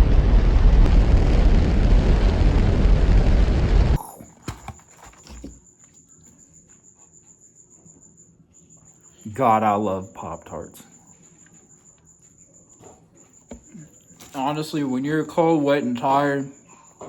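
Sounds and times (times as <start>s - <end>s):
rocket launch rumbling rush: 0.0s - 4.0s.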